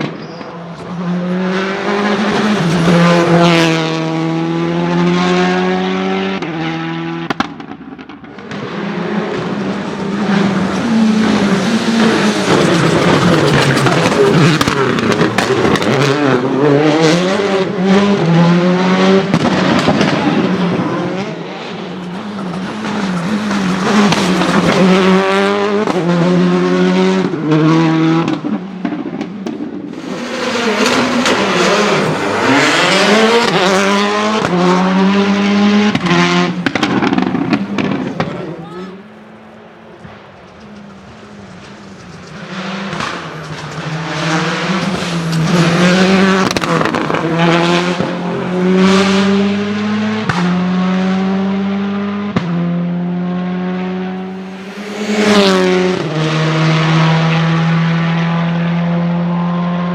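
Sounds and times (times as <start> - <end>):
rally car engine revving: 0.0 - 59.9.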